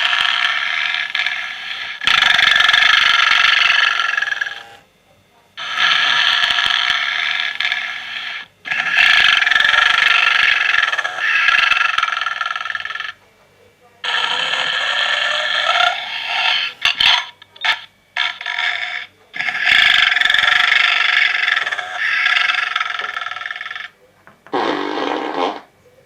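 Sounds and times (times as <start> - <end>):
man snoring raspily: 0.0 - 4.7, 5.6 - 13.2, 14.1 - 16.8, 19.4 - 23.9.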